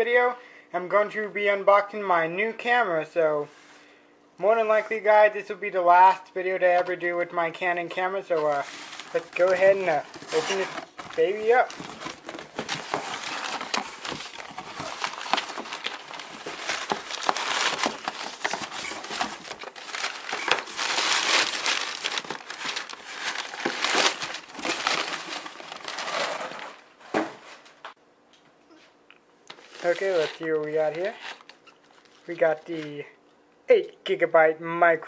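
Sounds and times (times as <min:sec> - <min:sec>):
packaging crinkling and rustling: 0:07.9 - 0:26.9, 0:29.5 - 0:32.9.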